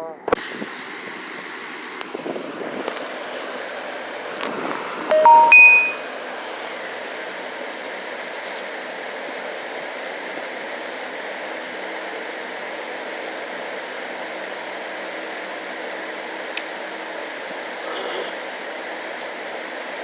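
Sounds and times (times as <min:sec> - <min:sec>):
short electronic beeps: 0:05.1 - 0:06.0.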